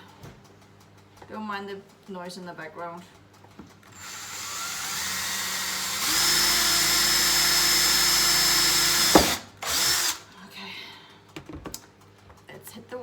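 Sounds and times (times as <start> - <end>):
power drill running: 3.9 - 10.3.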